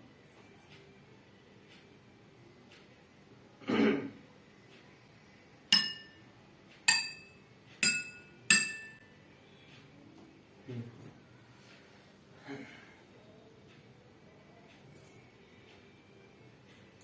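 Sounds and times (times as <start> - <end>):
glasses clinking and ringing: 5.8 - 6.2, 6.9 - 9.0.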